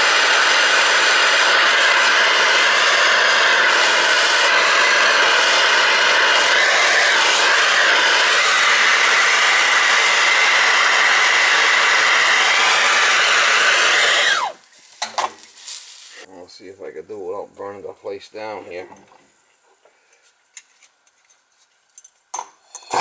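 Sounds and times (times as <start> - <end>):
electric blower motor running: 0.0 - 14.6.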